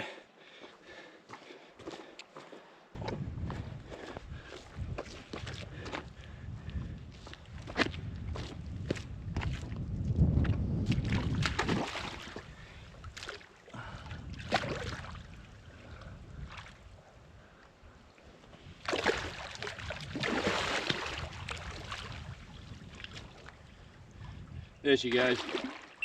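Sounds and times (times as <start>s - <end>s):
shallow water splashing: 11.0s - 17.0s, 18.2s - 24.3s, 25.0s - 26.0s.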